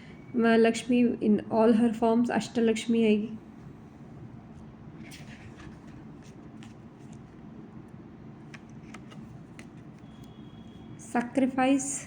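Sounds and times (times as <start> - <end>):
low steady hum: 0.0 - 12.0
cards being handled: 5.1 - 7.4, 8.4 - 10.4.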